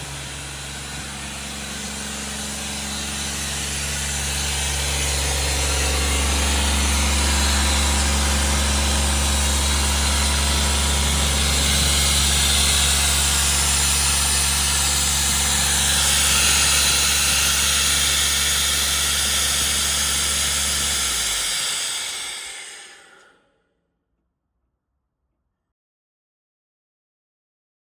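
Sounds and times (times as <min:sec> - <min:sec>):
diesel engine running: 0:00.0 - 0:23.1
compressor hiss: 0:00.0 - 0:23.2.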